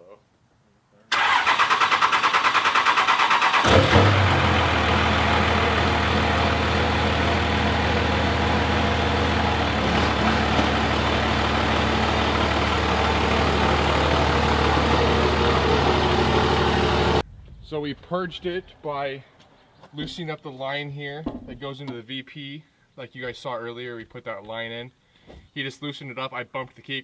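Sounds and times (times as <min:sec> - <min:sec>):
diesel engine cranking and idling: 0:01.1 - 0:17.2.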